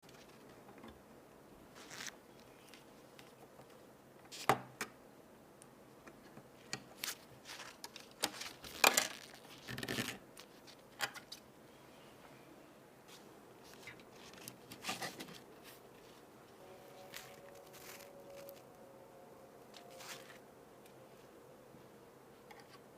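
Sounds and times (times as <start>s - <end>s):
cardboard and plastic rustling: 1.8s - 3.4s, 6.9s - 11.4s, 13.1s - 18.7s, 19.7s - 20.4s.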